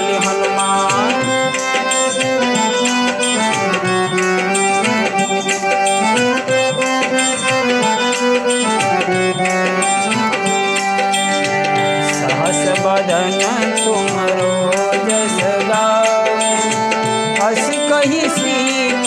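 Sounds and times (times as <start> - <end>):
held melody notes: 0.0 - 19.0
steady percussion rhythm: 0.0 - 19.0.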